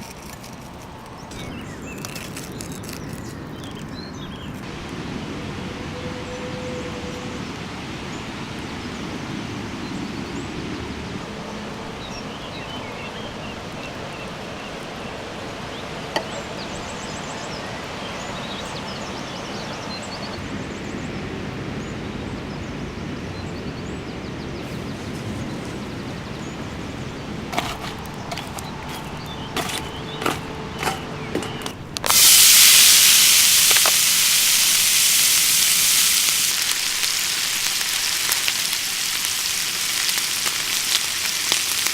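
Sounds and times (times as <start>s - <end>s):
outdoor background hiss: 0.0s - 41.9s
steaks sizzling on hot surface: 27.6s - 41.9s.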